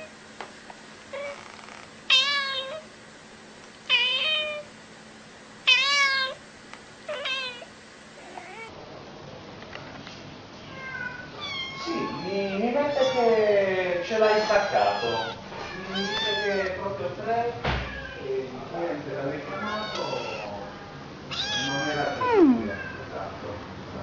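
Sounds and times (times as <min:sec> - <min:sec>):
cat meowing: 0:01.1 - 0:02.9, 0:03.9 - 0:04.7, 0:05.7 - 0:06.4, 0:07.1 - 0:08.7, 0:10.6 - 0:13.5, 0:14.1 - 0:16.8, 0:19.4 - 0:23.1.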